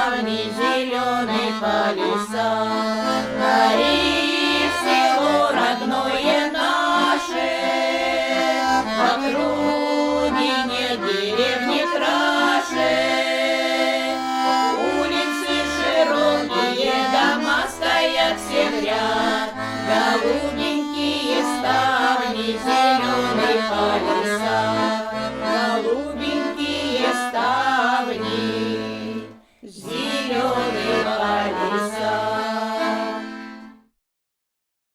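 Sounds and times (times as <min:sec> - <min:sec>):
accordion music: 0:00.0 - 0:33.9.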